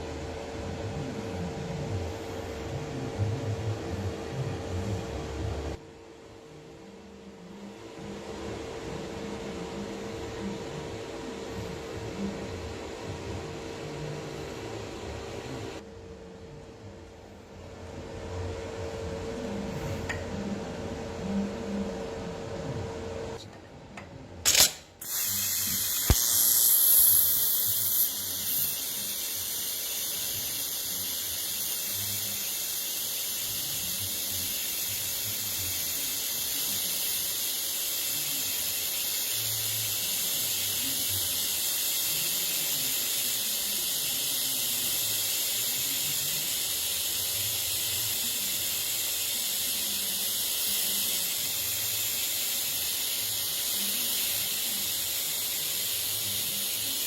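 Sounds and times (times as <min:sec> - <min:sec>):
welding arc striking bursts: 0:24.4 - 0:57.0
welding arc hissing: 0:24.5 - 0:57.0.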